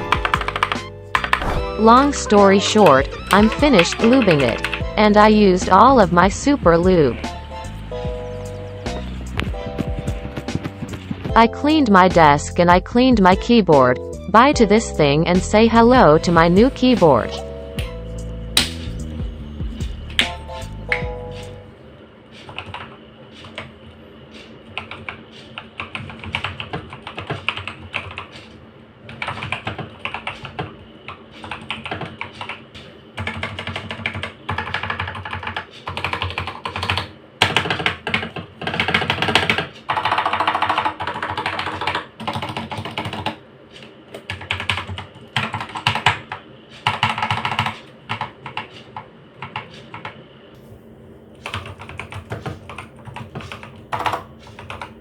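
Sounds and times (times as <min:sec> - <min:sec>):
mechanical keyboard typing: 0:00.0 - 0:07.2, 0:22.5 - 0:23.7, 0:24.8 - 0:28.4, 0:29.1 - 0:32.6, 0:33.2 - 0:43.4, 0:44.2 - 0:48.8, 0:51.4 - 0:55.0.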